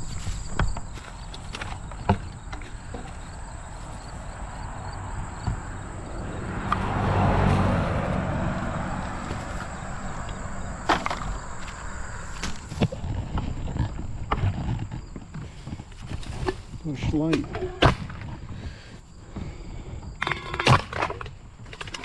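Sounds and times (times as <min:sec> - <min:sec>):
clicks and knocks of litter handled: 0:00.0 - 0:04.4
vehicle passing on road: 0:00.0 - 0:14.2.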